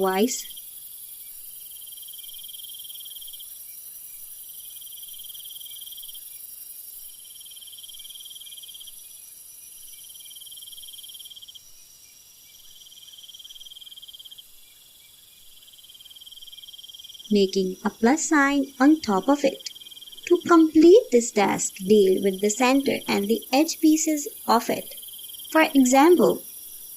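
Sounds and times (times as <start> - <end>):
crickets chirping: 0.0 - 26.9.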